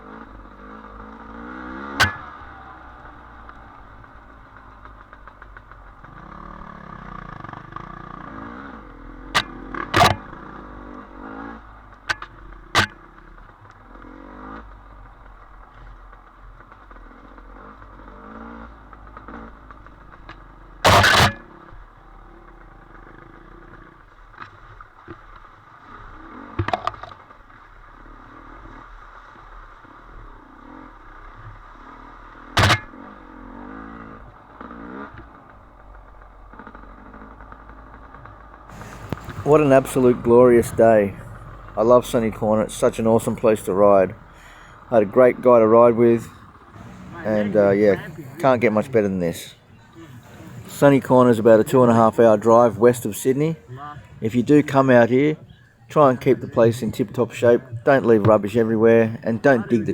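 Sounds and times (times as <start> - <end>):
dirt bike engine revving: 0.0 - 24.7, 27.9 - 59.9
sharp knocks and clatters: 1.8 - 2.4, 32.6 - 32.9.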